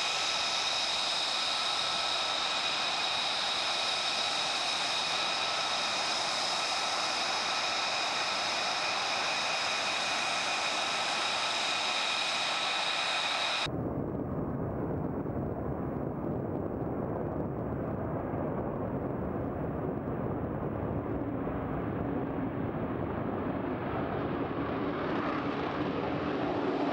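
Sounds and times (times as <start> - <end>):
jet engine whine: 0.0 - 13.7, 19.5 - 26.9
jet thrust rumble: 0.0 - 16.8.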